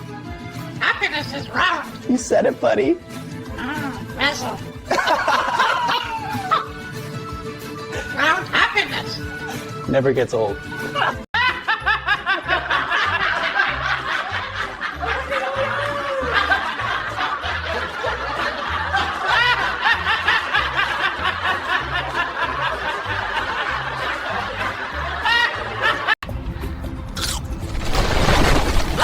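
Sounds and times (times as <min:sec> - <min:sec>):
rapid chuckling laughter: 0:04.9 - 0:06.8, 0:11.0 - 0:26.2.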